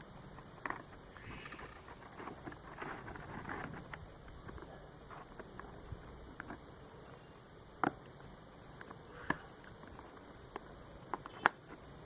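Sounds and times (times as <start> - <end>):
plastic wrapping crinkles: 1.4 - 6.6.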